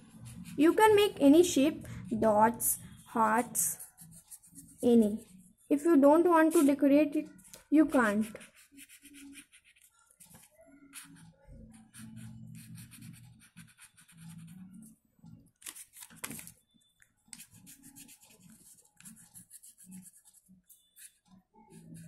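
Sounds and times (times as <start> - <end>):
pen scratching on paper: 0.0 - 1.2, 2.1 - 5.4, 7.9 - 14.7, 17.4 - 21.2.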